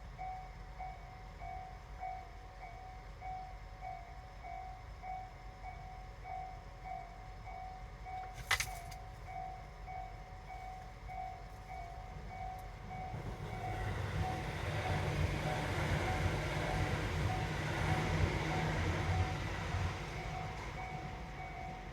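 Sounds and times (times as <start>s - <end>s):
level crossing warning bell: 0.0s - 21.9s
approaching train rumble: 9.3s - 21.9s.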